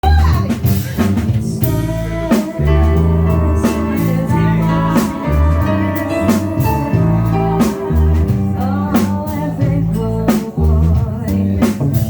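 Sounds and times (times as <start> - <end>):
guitar: 0.0 - 12.0
drum hits: 1.0 - 10.0
organ chords: 1.1 - 11.0.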